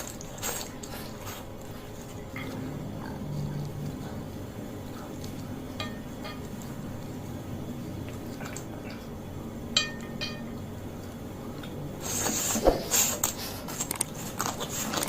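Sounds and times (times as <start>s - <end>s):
cutlery clinking on tableware: 5.8s - 6.6s, 9.8s - 10.6s.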